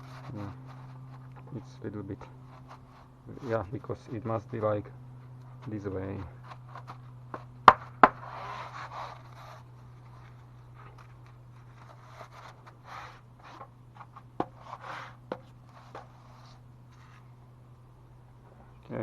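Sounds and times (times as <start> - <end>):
rustling and scraping: 0.0 - 17.4
steady low hum: 0.0 - 19.0.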